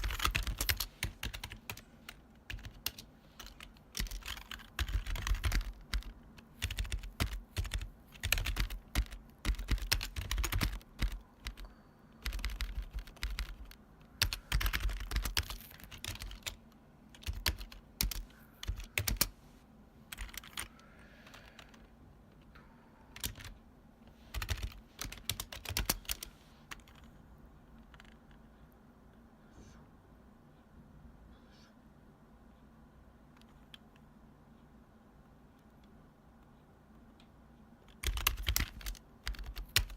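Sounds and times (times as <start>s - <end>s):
keyboard keys clacking: 0.0s - 19.3s, 24.3s - 27.2s, 37.8s - 39.9s.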